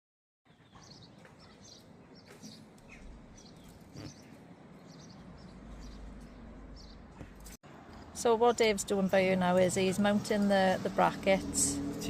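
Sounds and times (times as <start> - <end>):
small birds chirping: 0.5 - 10.1.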